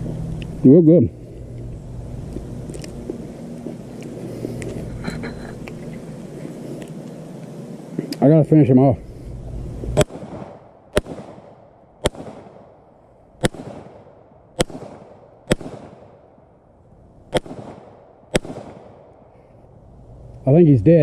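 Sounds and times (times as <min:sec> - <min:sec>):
handgun shots with echo: 0:10.0 - 0:12.7, 0:13.4 - 0:16.2, 0:17.3 - 0:19.1.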